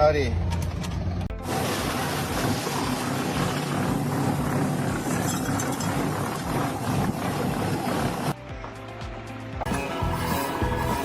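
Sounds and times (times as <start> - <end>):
engine running: 0.3 - 8.4
loud mechanical noise: 1.3 - 8.4.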